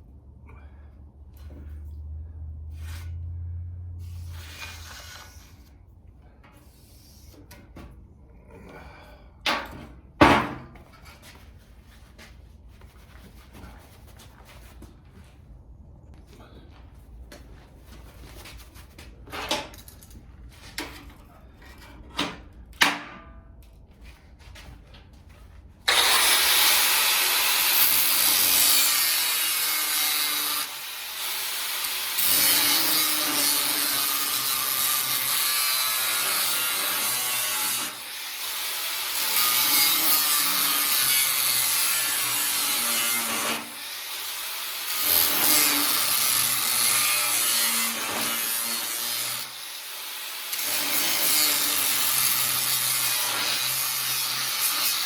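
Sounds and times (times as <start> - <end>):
loud power tool running on metal: 25.9 - 55.0.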